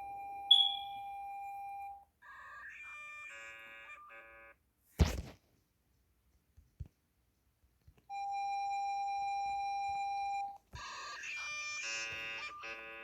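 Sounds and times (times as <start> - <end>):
jumbled electronic tones: 0.5 - 0.9
steady electronic beep: 0.5 - 1.0.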